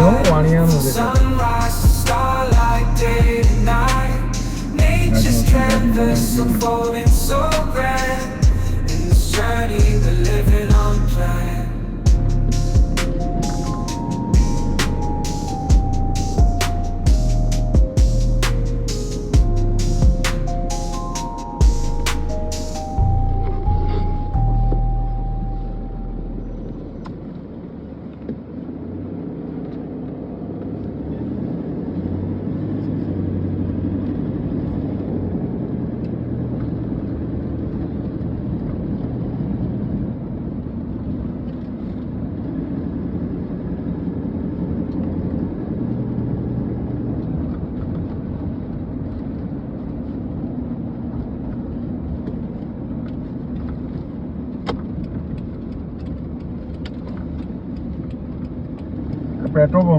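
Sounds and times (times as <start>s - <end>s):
music track: 0.0s - 27.0s
car engine and road noise: 0.0s - 59.9s.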